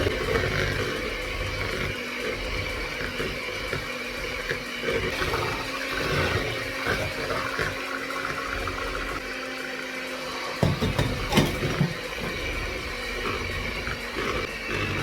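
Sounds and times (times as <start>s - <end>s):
electric hand mixer whirring: 0.0s - 15.0s.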